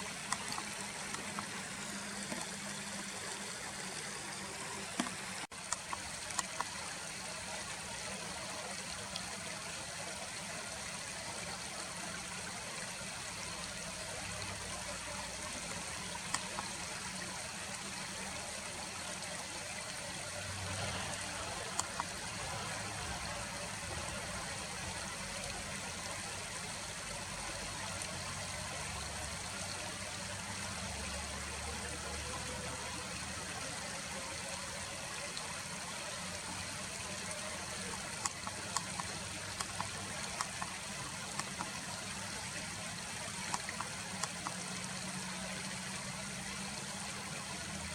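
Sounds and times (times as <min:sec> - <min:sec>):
stream water rushing: 0:00.0 - 0:47.9
faint clicks: 0:00.1 - 0:04.1, 0:04.7 - 0:06.9, 0:14.8 - 0:17.3, 0:21.0 - 0:22.4, 0:36.9 - 0:42.3, 0:43.3 - 0:45.0.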